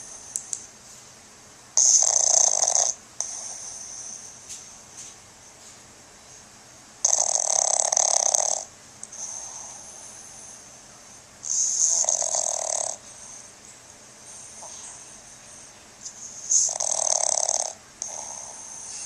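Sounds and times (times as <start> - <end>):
dog snoring: 1.8 - 4.4, 7.0 - 13.5, 14.3 - 19.0
dog snuffly breathing: 1.8 - 5.1, 7.1 - 13.6, 14.2 - 19.0.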